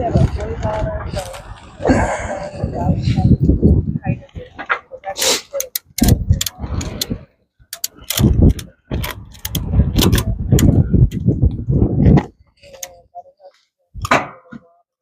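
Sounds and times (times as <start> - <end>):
wind buffeting microphone: 0.0 - 13.2
ratchet strap clicking: 5.6 - 7.1, 7.7 - 10.7.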